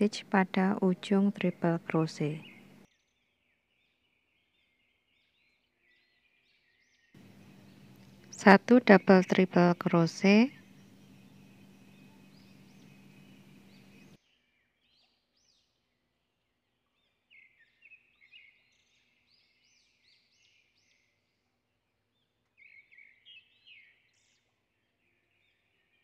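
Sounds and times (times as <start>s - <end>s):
low hum and hiss: 0.0s - 2.8s, 7.2s - 14.2s
faint bird chirps: 1.1s - 15.4s.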